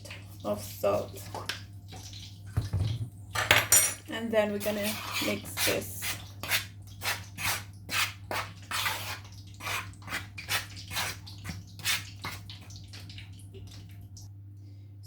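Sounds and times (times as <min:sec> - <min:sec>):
spoon scraping flour in bowl: 0:04.6 - 0:12.4
steady low hum: 0:13.5 - 0:15.0.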